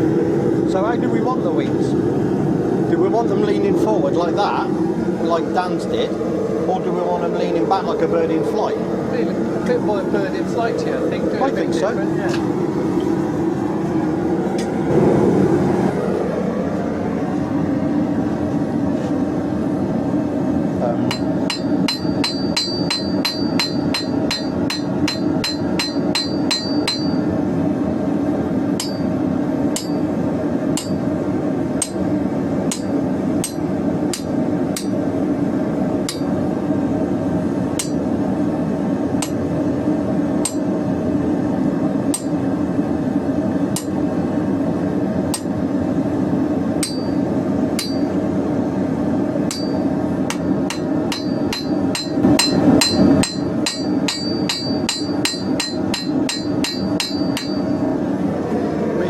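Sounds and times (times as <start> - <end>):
forge roaring: 0.0 - 59.0
hammer striking steel on anvil: 21.1 - 27.2, 28.8 - 29.1, 29.7 - 30.0, 30.8 - 31.0, 31.8 - 32.0, 32.7 - 35.0, 36.1 - 36.3, 37.8 - 38.0, 39.2 - 39.4, 40.4 - 40.6, 42.1 - 42.4, 43.7 - 44.0, 45.3 - 45.5, 46.8 - 47.2, 47.8 - 48.1, 49.5 - 57.8.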